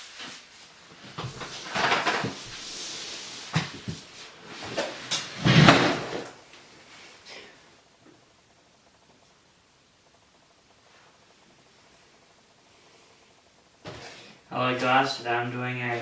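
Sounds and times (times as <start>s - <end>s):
knocks and clatters: 1.2s - 2.4s.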